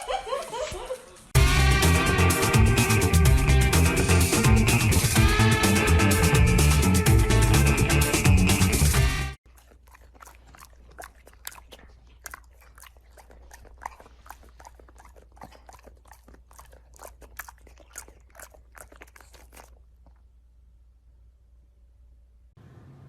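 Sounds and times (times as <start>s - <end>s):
dog crunching food: 9.4s - 20.4s
faint low hum: 9.5s - 23.0s.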